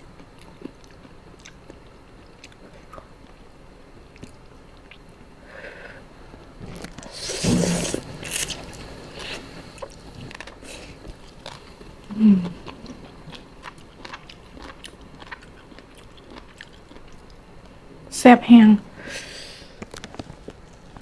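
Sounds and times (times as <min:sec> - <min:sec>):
crunchy wet chewing: 0:00.1 - 0:05.1, 0:06.6 - 0:17.8.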